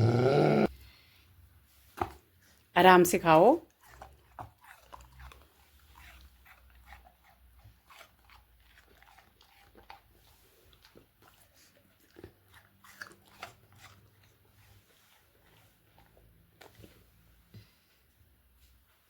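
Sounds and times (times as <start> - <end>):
dog crunching apple: 3.7 - 17.2.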